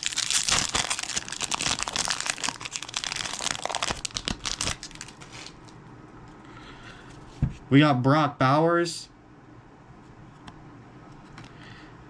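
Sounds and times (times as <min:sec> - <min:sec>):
wrapper tearing and crinkling: 0:00.0 - 0:05.8.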